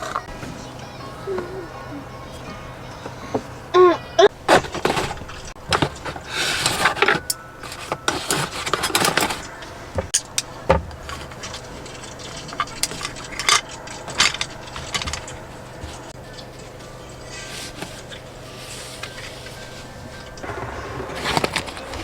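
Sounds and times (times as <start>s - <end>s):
scraping of dishes: 0.0s - 16.6s
dishes and utensils clinking: 0.0s - 22.0s.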